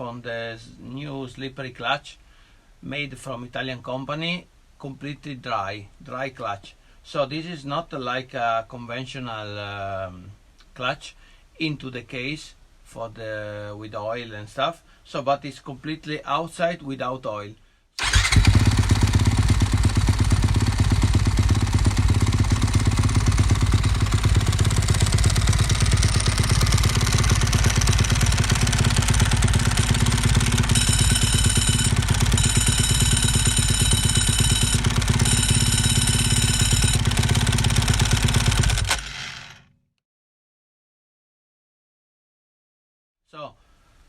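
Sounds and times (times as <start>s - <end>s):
clutch clatter: 18.0s - 20.1s, 21.4s - 39.5s
motorcycle engine running: 18.0s - 39.5s.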